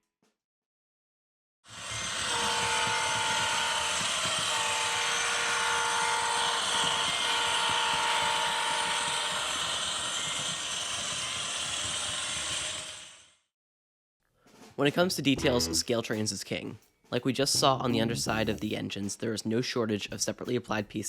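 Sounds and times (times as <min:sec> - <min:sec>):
locomotive horn blasts: 0:02.0 - 0:09.2.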